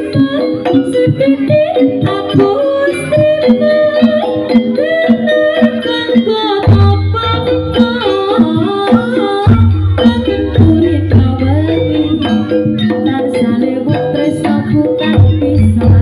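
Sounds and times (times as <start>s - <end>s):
sustained melody notes: 6.8s - 16.0s.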